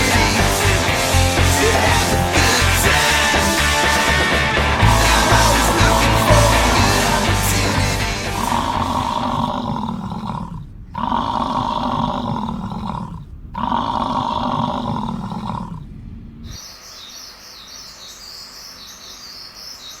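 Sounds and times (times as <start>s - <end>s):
long low-pitched tones: 0.0s - 16.6s
small birds chirping: 8.4s - 20.0s.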